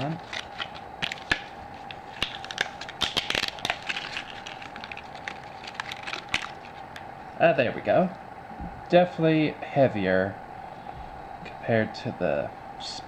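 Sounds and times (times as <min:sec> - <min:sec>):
plastic packaging crinkling: 0:00.0 - 0:07.0.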